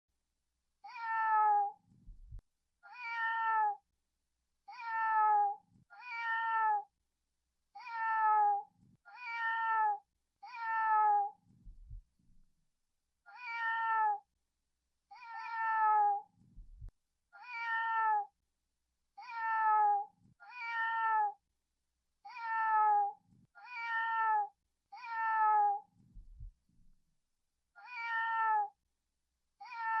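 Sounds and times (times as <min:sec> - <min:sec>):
cat meowing: 0:00.8 - 0:01.8, 0:02.8 - 0:03.8, 0:04.7 - 0:06.9, 0:07.8 - 0:11.4, 0:13.3 - 0:14.2, 0:15.1 - 0:16.3, 0:17.4 - 0:18.3, 0:19.2 - 0:21.4, 0:22.2 - 0:25.9, 0:27.8 - 0:28.8, 0:29.6 - 0:30.0
faint low thuds: 0:02.0 - 0:02.4, 0:11.6 - 0:12.4, 0:16.5 - 0:16.9, 0:26.0 - 0:26.6.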